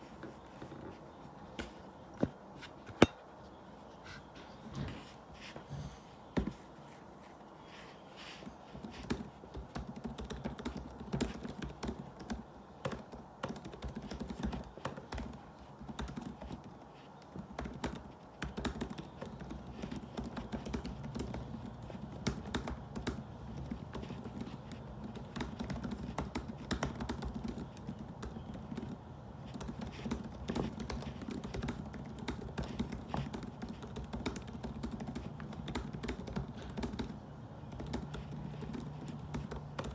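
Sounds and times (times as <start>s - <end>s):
typing on laptop keyboard: 8.2s - 39.9s.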